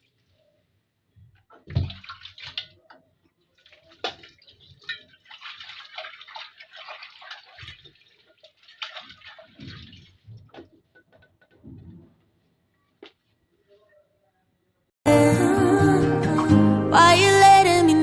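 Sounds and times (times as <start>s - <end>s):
water splashing and dripping: 1.5s - 12.0s
metal pot clattering: 4.0s - 5.4s.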